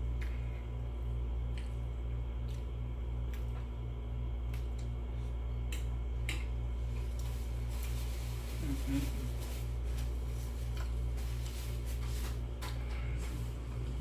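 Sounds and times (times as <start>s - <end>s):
low pulsing hum: 0.0s - 14.0s
eating and utensil clicks: 5.6s - 6.5s.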